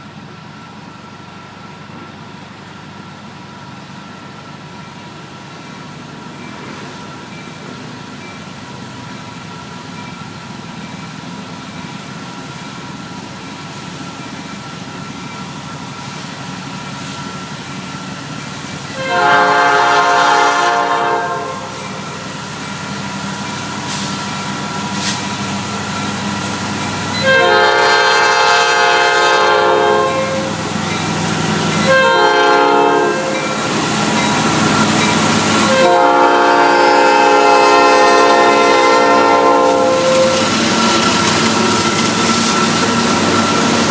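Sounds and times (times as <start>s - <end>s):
train rumble: 0.0s - 43.9s
locomotive air horn blasts: 18.9s - 22.0s, 27.2s - 30.6s, 31.8s - 33.6s, 35.5s - 40.5s.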